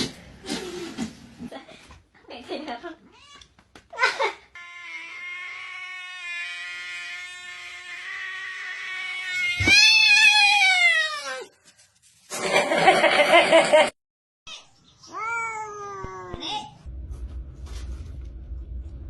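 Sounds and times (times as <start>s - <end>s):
cat yowling and meowing: 4.6s - 11.5s.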